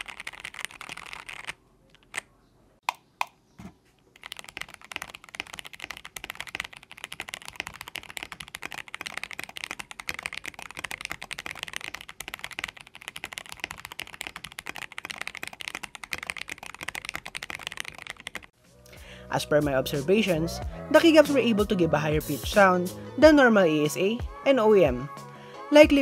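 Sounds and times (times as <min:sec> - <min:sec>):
mechanical keyboard typing: 0:00.0 - 0:02.2, 0:04.2 - 0:18.5.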